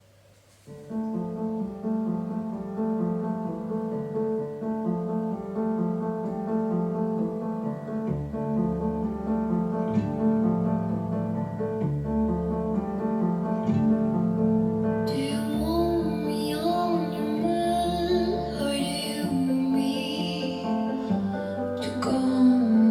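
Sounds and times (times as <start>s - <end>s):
deep bass notes: 8.0s - 19.7s.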